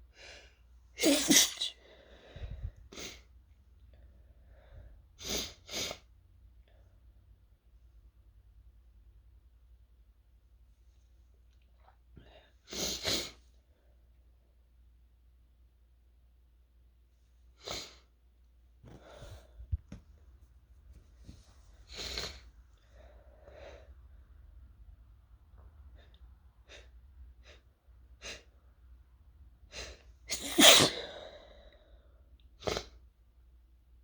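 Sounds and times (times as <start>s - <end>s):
person sneezing: 1.0s - 1.8s, 30.3s - 31.6s.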